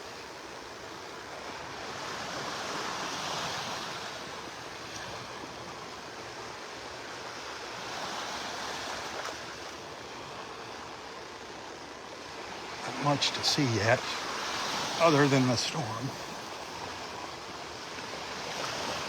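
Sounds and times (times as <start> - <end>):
waves breaking on beach: 0.0 - 19.0.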